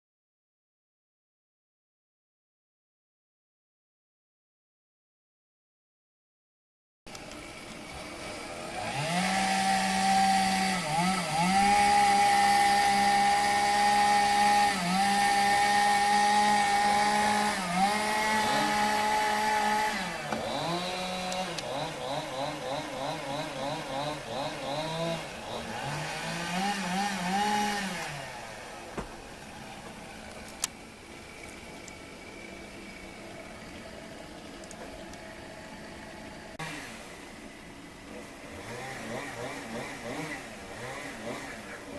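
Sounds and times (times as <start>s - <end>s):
chainsaw running at high revs: 7.4s - 30.2s, 35.2s - 37.3s, 38.0s - 41.9s.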